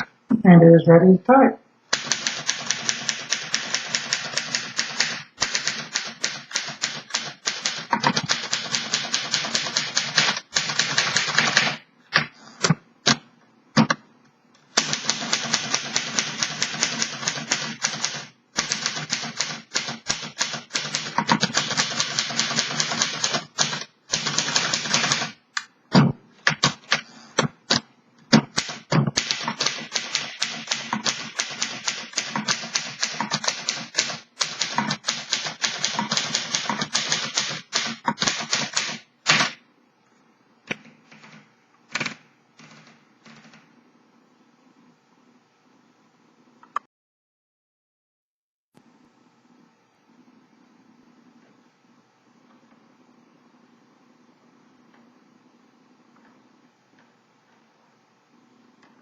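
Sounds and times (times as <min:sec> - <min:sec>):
manual typewriter typing: 0:01.9 - 0:11.8, 0:14.8 - 0:25.4, 0:26.4 - 0:27.0, 0:27.7 - 0:39.6, 0:40.7 - 0:43.6.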